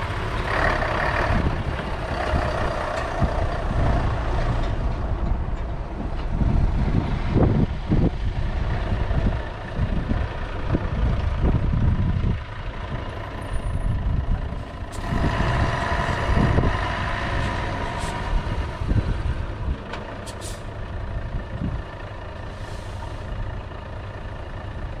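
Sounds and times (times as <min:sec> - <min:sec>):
diesel engine rumbling: 0:00.0 - 0:25.0.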